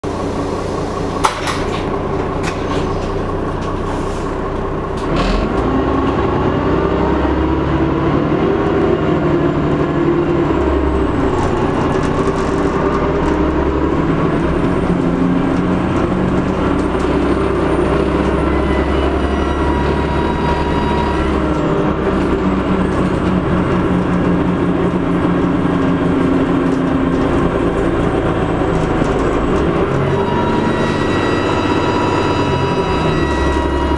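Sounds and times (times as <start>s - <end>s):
bus diesel engine running: 0.0s - 33.9s
turbocharger whistle: 17.6s - 21.8s, 29.8s - 33.9s.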